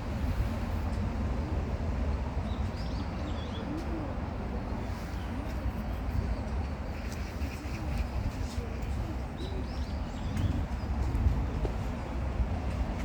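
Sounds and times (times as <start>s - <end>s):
steady low rumble: 0.0s - 3.1s.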